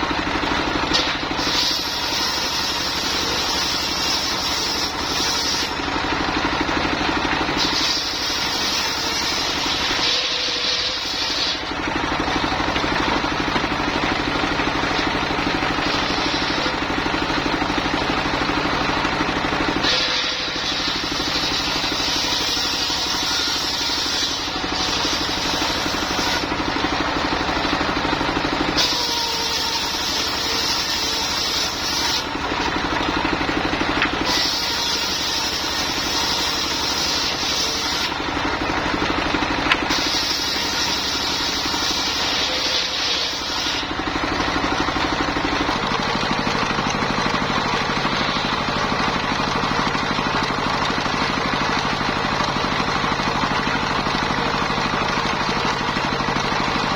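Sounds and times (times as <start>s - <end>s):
sawmill engine running: 0.0s - 56.9s
saw blade hissing through wood: 0.9s - 5.8s, 7.6s - 11.7s, 19.8s - 26.5s, 28.8s - 32.3s, 34.2s - 38.2s, 39.8s - 43.9s.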